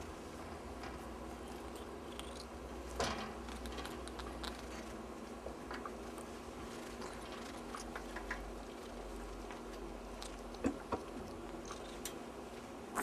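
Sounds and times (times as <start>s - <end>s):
steady low hum: 0.0s - 13.0s
kitten tapping and scratching: 6.8s - 12.2s.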